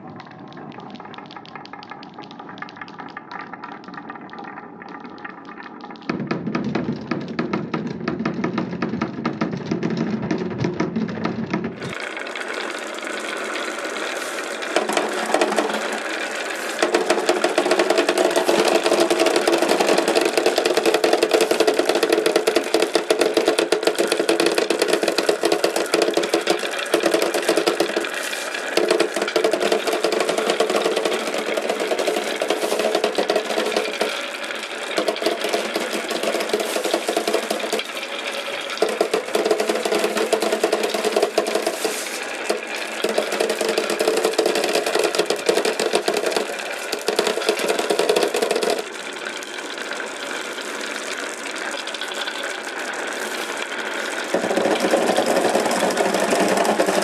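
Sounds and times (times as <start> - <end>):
marbles rattling down wooden run: 0.0 - 57.0.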